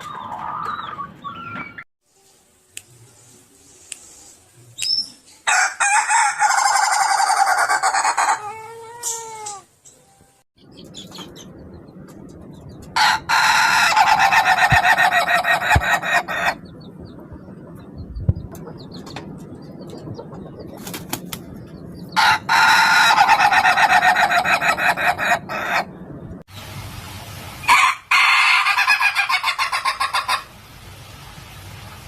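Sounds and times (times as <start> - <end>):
rooster crowing in stuttering notes: 13.0 - 16.6.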